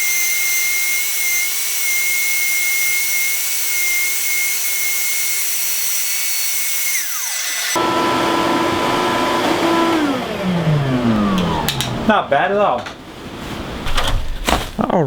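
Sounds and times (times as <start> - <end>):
table saw whining: 0.0 - 12.4
shop vac motor hum: 6.6 - 12.5.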